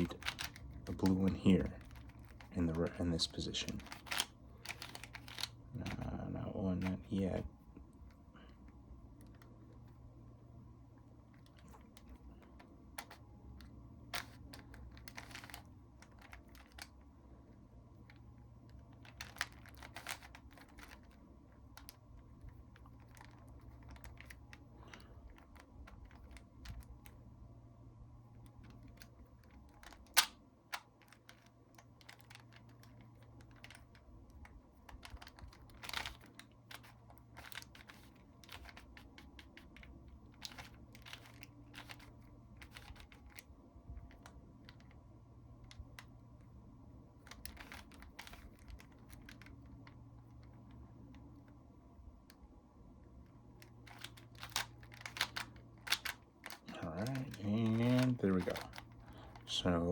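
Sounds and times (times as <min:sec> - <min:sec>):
puzzle cube clicking: 0:00.0 - 0:07.5, 0:14.1 - 0:17.0, 0:18.7 - 0:22.1, 0:28.6 - 0:34.0, 0:34.8 - 0:43.5, 0:47.2 - 0:49.6, 0:53.7 - 0:59.7
faint low hum: 0:00.0 - 0:59.9.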